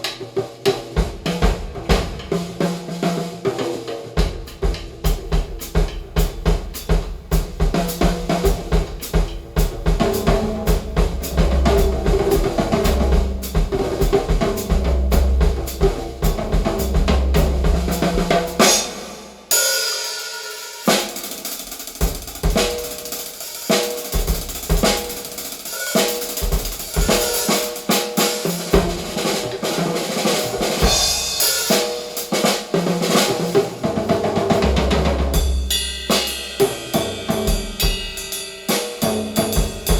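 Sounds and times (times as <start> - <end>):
cymbals: 0.0 - 39.9
snare drum: 0.0 - 39.9
kick drum: 4.2 - 18.4.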